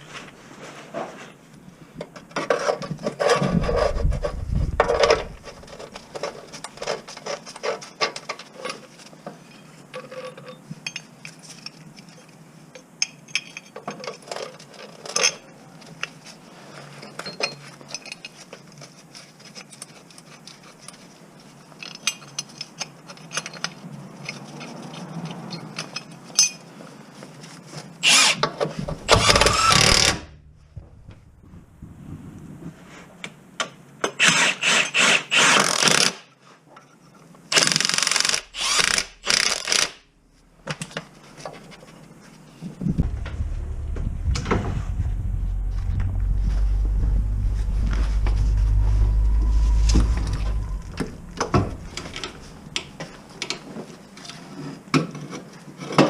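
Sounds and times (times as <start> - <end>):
metal tools clinking and knocking: 13.0 - 14.4
heavy bursts of noise: 28.8 - 32.0, 38.0 - 41.0, 42.8 - 53.6.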